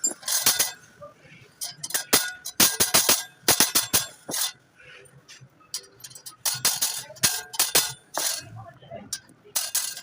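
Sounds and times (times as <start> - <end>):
metal tools clinking and tapping: 0.0 - 0.9, 1.6 - 4.6, 5.3 - 8.5, 9.1 - 10.0.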